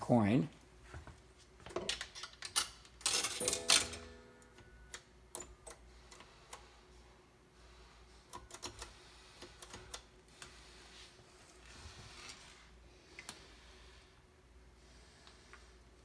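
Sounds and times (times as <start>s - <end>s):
coin clattering and bell ringing: 3.0s - 4.2s.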